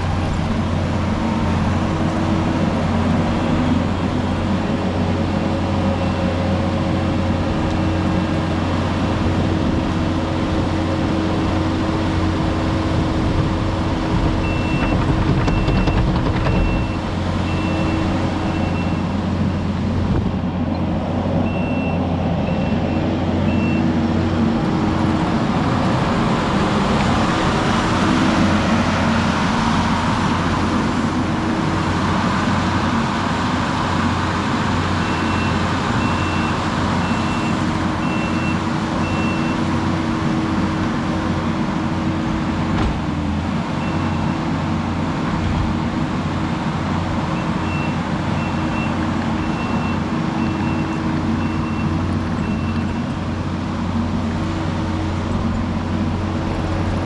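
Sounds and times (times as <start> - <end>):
heavy construction machine engine: 0.0 - 57.0
reversing alarm beeping: 47.4 - 53.1.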